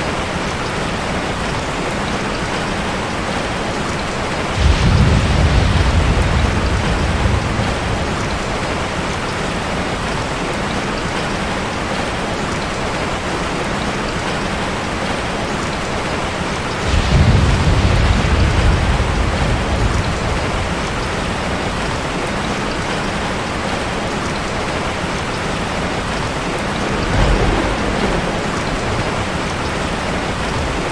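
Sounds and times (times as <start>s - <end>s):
steady rain: 0.0s - 30.9s
thunder rolling: 4.5s - 9.2s, 16.8s - 22.1s, 25.6s - 30.9s.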